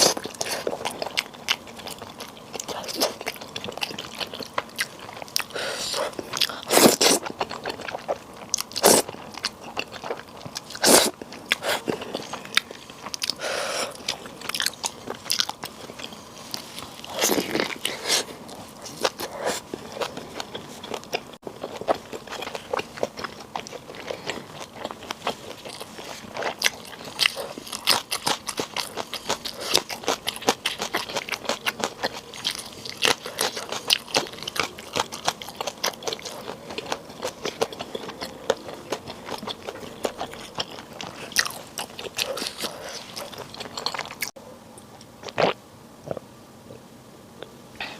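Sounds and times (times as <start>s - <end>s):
person chewing wetly: 0.0s - 44.4s.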